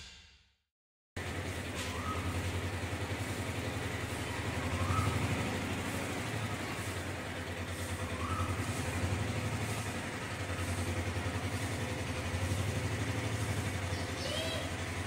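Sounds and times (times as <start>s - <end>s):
pulsing engine-like hum: 1.2s - 15.0s
bird chirping: 4.6s - 5.6s, 8.0s - 8.8s.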